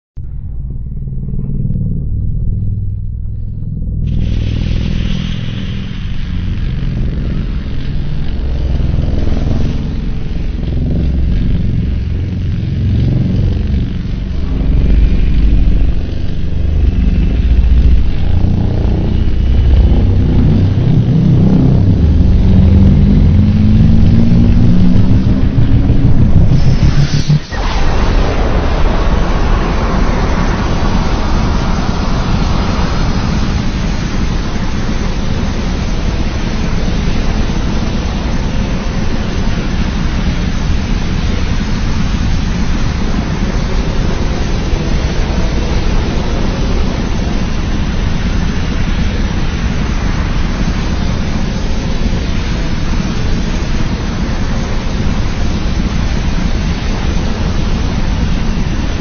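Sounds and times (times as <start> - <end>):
rising pitched tone: 0.2 - 39.7
deep monster rumble: 0.2 - 59.0.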